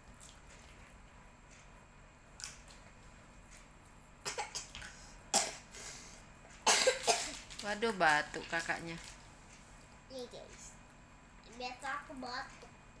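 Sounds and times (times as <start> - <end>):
child coughing: 4.2 - 4.8, 5.4 - 5.7, 6.6 - 7.5.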